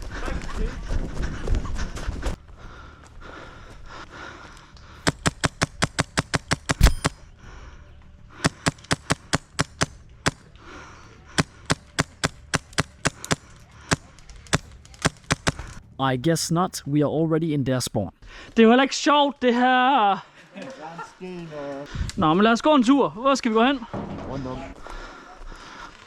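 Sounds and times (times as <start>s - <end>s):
airsoft gun shots: 5.0s - 7.2s, 8.4s - 10.5s, 11.4s - 15.8s.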